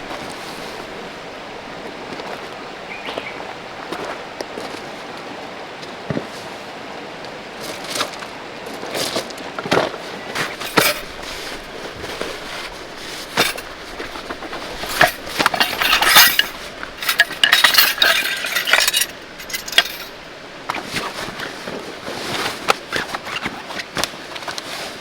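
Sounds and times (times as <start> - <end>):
cookware clinking and clattering: 10.5 - 11.6, 12.2 - 20.3.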